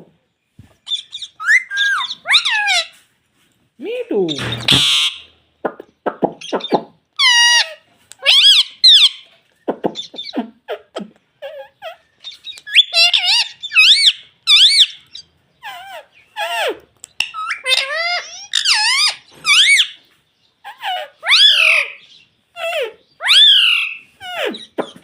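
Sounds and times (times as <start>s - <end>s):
parrot squeaky calls: 0.8s - 3.0s, 4.3s - 5.3s, 6.4s - 9.3s, 10.0s - 10.8s, 11.4s - 25.0s
parrot chattering: 6.4s - 20.0s.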